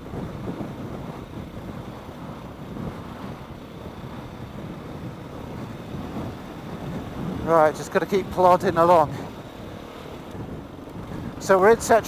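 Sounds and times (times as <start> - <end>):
wind rumbling on microphone: 0.0 - 12.0.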